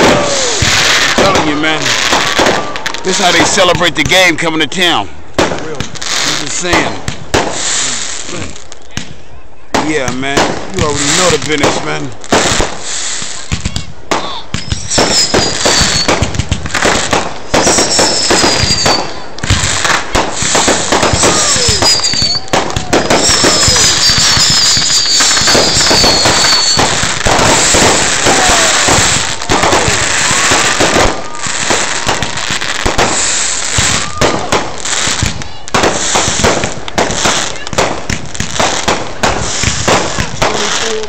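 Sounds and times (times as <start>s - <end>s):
fireworks cracks and bangs: 0.0s - 41.0s
high falling whistles: 14.6s - 16.2s, 17.6s - 19.2s, 21.1s - 26.9s.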